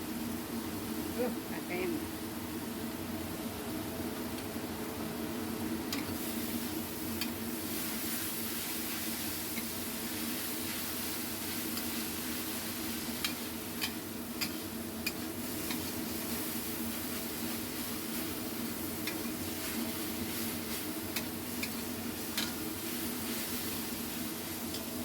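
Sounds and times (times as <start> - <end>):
food sizzling in a pan: 4.6 - 25.0
spatula clicking against pan: 13.2 - 15.9, 19.0 - 19.3, 21.1 - 22.6.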